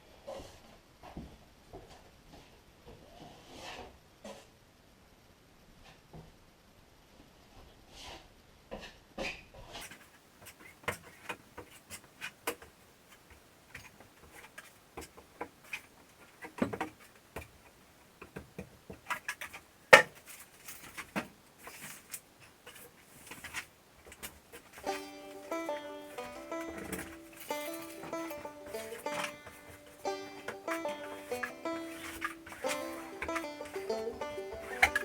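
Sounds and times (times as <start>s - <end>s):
hand tools clicking and knocking: 9.8s - 35.0s.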